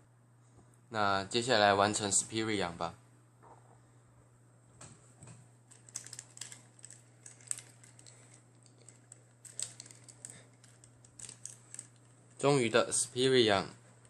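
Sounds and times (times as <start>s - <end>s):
plastic toy parts clicking: 5.7s - 12.4s.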